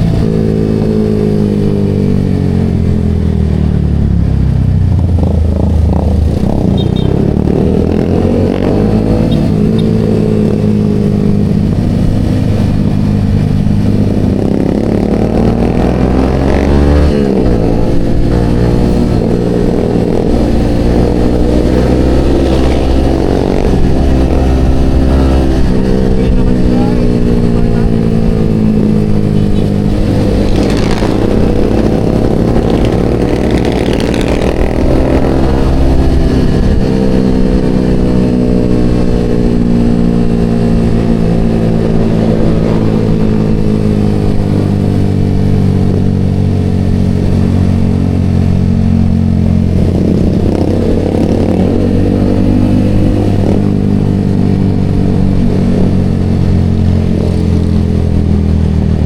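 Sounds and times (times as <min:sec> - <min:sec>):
motorcycle engine cruising: 0:00.0 - 0:59.0.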